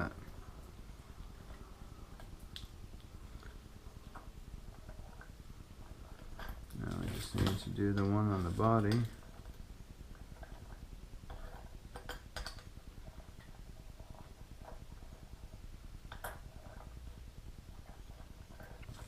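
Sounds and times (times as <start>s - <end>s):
handling of small parts and tools: 6.2s - 9.3s.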